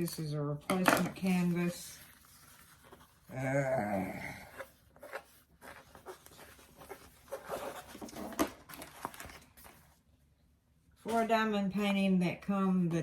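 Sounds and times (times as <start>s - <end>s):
packaging rustling and scraping: 1.2s - 3.3s, 4.5s - 10.0s.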